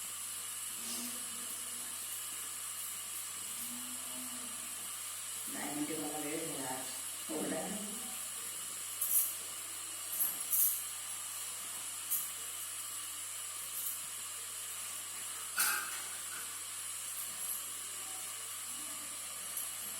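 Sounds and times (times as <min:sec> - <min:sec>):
electronic hiss: 0:00.0 - 0:19.9.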